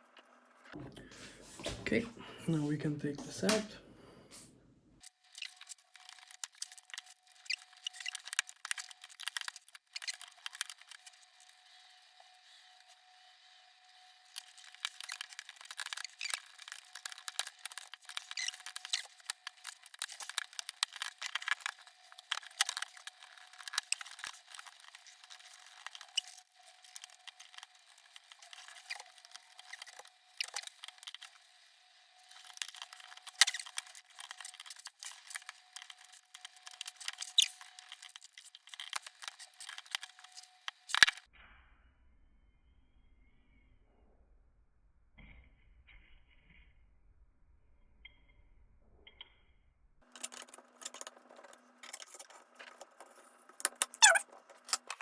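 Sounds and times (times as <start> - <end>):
laptop parts clicking and scraping: 5.0 - 41.3, 50.0 - 55.0.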